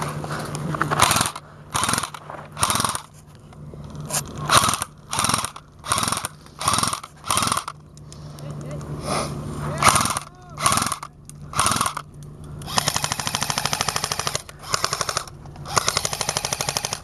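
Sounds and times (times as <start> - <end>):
magazine wheel ratcheting: 0.9 - 3.2, 3.8 - 8.0, 9.8 - 17.0.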